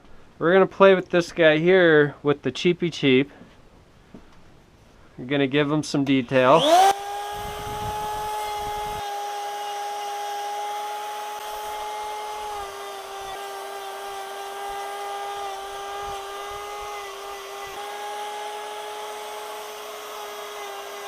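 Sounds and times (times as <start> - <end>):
rotary tool whining cutting wood: 6.5 - 21.0.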